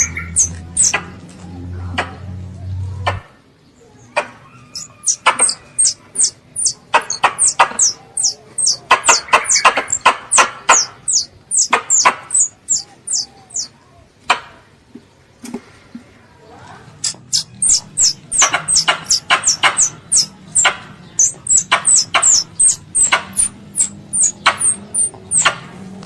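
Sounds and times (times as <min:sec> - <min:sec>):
young squirrel chirping: 0:00.0 - 0:01.1, 0:04.2 - 0:13.7, 0:17.0 - 0:25.6
squirrel click: 0:17.0 - 0:25.6.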